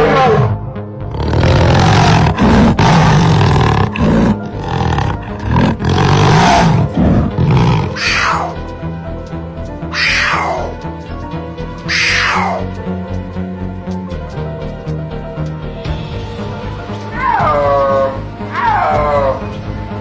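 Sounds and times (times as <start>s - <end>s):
lion roaring: 0.0s - 8.7s, 9.9s - 10.8s, 11.9s - 12.8s, 17.2s - 19.5s
background music: 0.0s - 20.0s.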